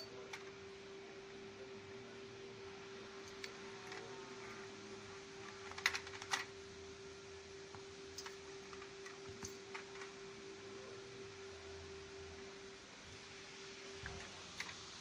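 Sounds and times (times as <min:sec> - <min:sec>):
steady hum: 0:00.0 - 0:15.0.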